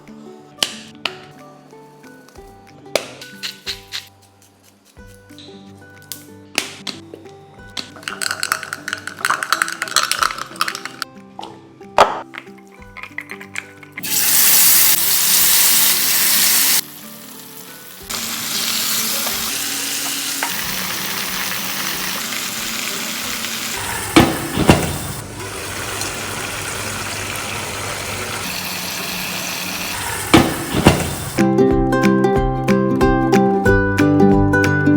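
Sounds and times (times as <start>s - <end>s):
chicken sizzling in hot oil: 14.0s - 31.4s
sharp knocks: 24.2s - 25.2s, 30.2s - 31.4s.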